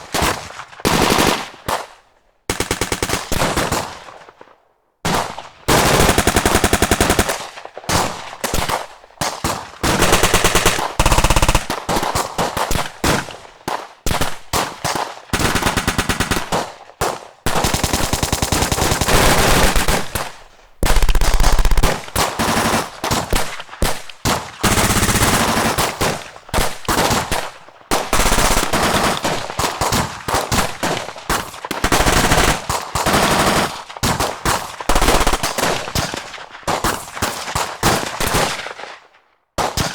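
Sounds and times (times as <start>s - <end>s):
machine-gun fire: 5.7s - 8.9s, 9.8s - 13.4s, 14.1s - 33.8s.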